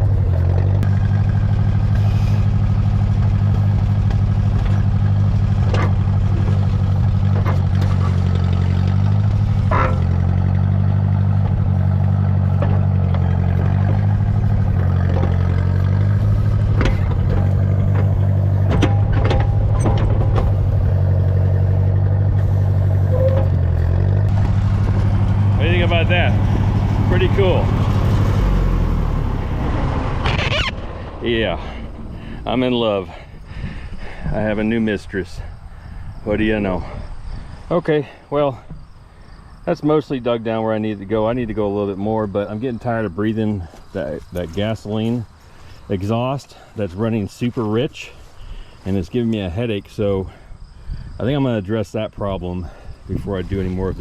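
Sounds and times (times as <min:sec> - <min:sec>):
tractor engine running under load: 0:00.0 - 0:38.0
metal parts clanking: 0:09.6 - 0:10.3, 0:14.8 - 0:24.2.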